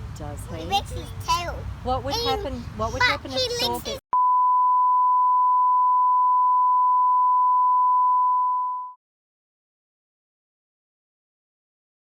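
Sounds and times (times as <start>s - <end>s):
steady electronic beep tone: 4.2s - 9.0s.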